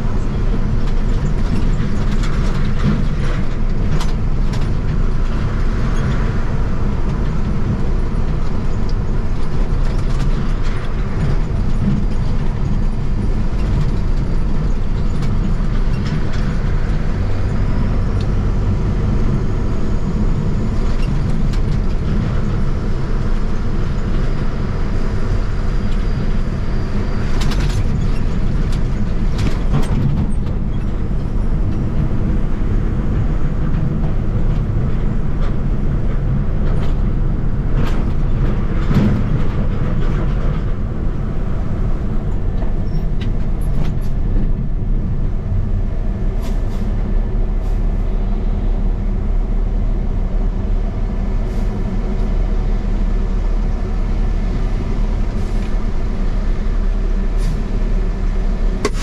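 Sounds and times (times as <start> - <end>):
truck engine and road rumble: 0.0 - 59.0.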